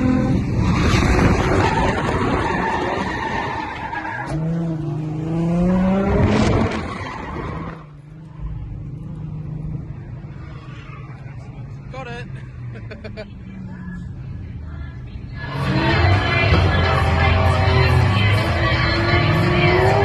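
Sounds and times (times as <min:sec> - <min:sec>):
car engine revving: 0:03.9 - 0:14.6, 0:15.3 - 0:20.0.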